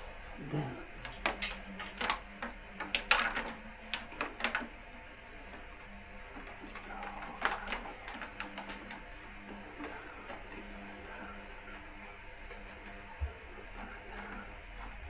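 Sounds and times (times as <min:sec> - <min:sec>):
clicks handling plastic parts: 0:01.1 - 0:04.6.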